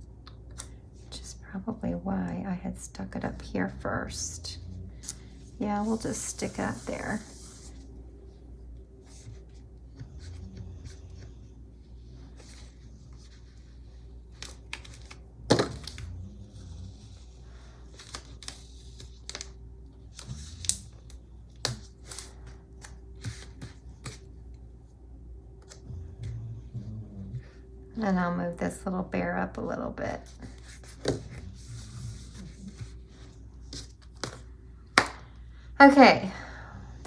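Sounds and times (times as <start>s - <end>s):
steady low hum: 0.0s - 37.0s
paper and sticker sheets rustling: 5.0s - 7.9s, 17.0s - 24.2s.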